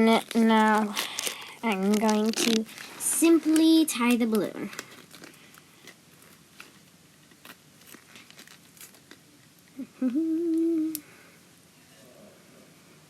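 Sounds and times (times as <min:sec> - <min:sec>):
balloon being handled and tied: 0:00.0 - 0:09.8
person humming with effort: 0:09.8 - 0:11.1.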